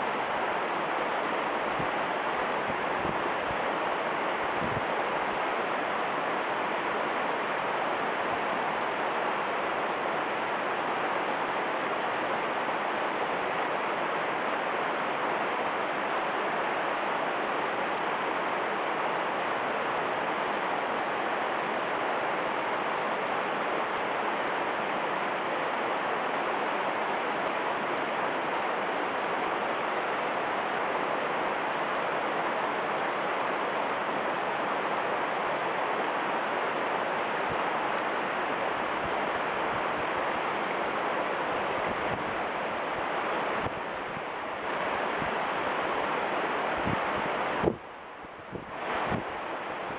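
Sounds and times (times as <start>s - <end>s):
river water rushing over rocks: 0.0s - 49.9s.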